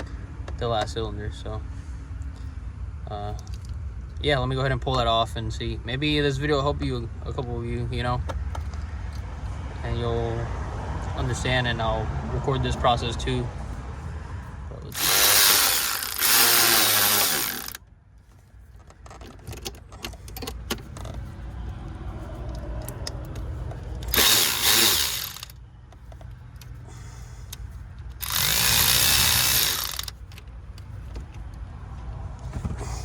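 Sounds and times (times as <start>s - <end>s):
handheld power tool whirring: 14.9s - 17.8s, 24.0s - 25.6s, 28.1s - 30.3s.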